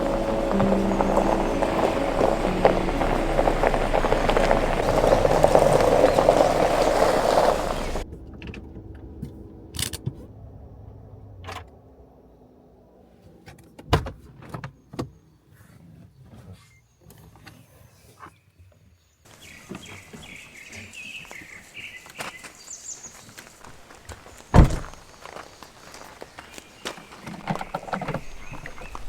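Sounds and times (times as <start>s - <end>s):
background music with held notes: 0.0s - 8.0s
heavy rain: 0.0s - 8.0s.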